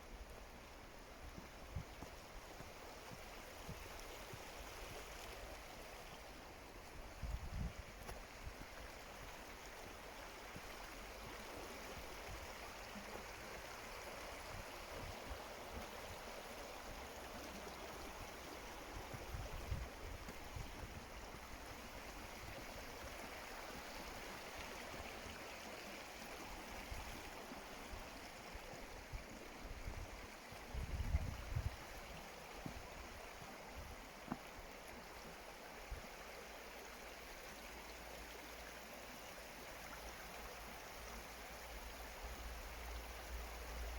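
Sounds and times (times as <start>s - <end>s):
stream rushing: 0.0s - 43.9s
wind thumps on microphone: 30.7s - 31.8s.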